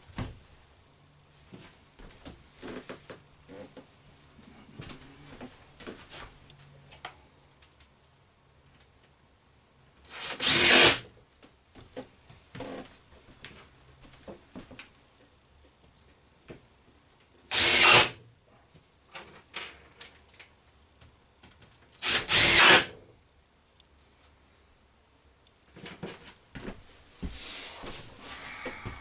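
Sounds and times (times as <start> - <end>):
power drill driving screws: 10.1 - 11.0, 17.5 - 18.2, 22.0 - 23.0.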